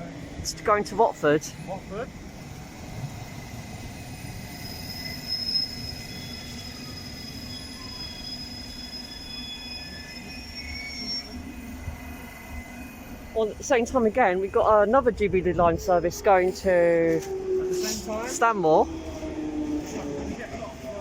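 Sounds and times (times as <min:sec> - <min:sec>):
high squealing wheels: 0:01.5 - 0:14.8, 0:15.8 - 0:21.0
train rumble: 0:11.3 - 0:21.0.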